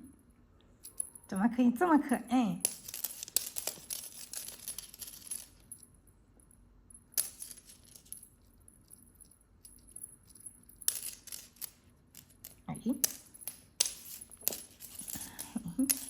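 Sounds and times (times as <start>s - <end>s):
toy jingling and rattling: 0.8s - 1.4s, 2.6s - 5.9s, 7.2s - 16.0s.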